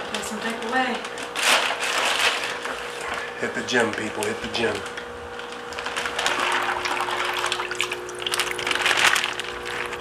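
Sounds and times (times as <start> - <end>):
water pouring and splashing: 6.0 - 10.0.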